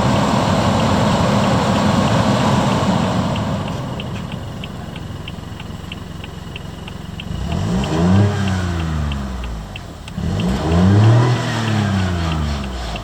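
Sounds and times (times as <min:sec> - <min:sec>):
car engine idling with ticking: 0:00.0 - 0:13.0
engine revving: 0:07.0 - 0:13.0.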